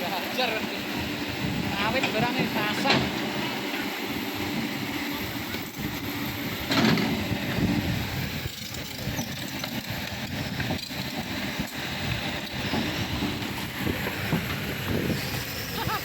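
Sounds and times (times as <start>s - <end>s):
excavator engine running: 0.0s - 16.0s
metal clanks and knocks: 6.7s - 7.2s.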